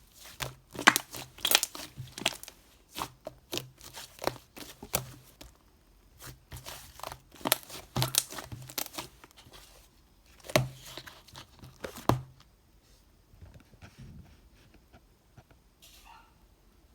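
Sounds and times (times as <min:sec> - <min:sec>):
crinkling handling noise: 0:00.0 - 0:14.9.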